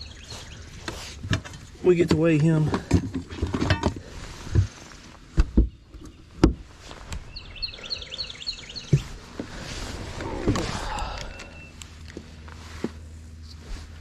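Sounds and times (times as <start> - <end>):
bird chirping: 0.0 - 0.8, 7.2 - 9.1, 10.9 - 11.8.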